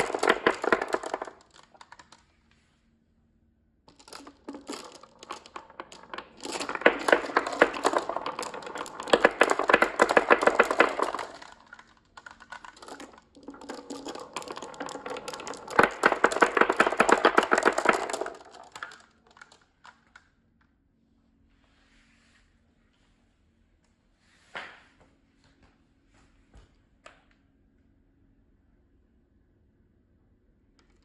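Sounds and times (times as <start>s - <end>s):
marbles clattering down a track: 0.0s - 2.2s, 3.9s - 20.2s.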